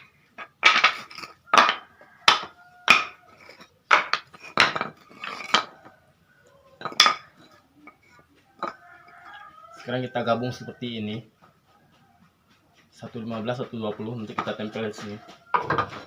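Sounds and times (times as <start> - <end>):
wooden clacks of timber pieces: 0.0 - 5.8, 6.8 - 8.0, 13.9 - 16.0.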